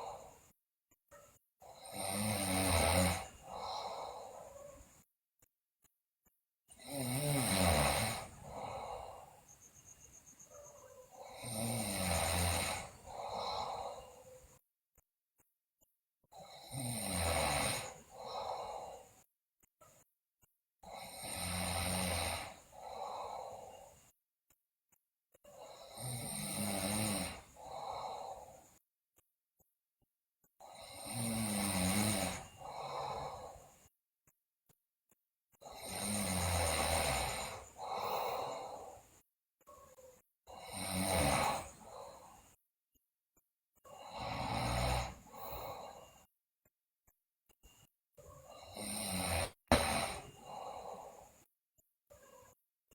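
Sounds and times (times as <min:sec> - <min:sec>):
girl snoring loudly: 0:01.6 - 0:04.6, 0:06.7 - 0:09.4, 0:11.0 - 0:14.3, 0:16.3 - 0:19.3, 0:20.8 - 0:23.9, 0:25.5 - 0:28.7, 0:30.6 - 0:33.8, 0:35.6 - 0:39.0, 0:39.9 - 0:42.3, 0:43.9 - 0:46.2, 0:48.4 - 0:51.4.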